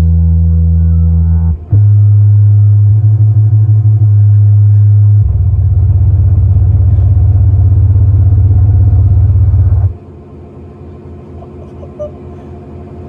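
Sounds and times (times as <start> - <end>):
deep bass tone through subwoofer: 0.0 - 10.0.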